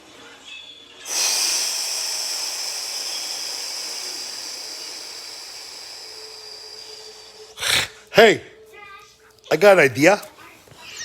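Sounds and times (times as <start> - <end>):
long hissing breath out: 1.0 - 8.1.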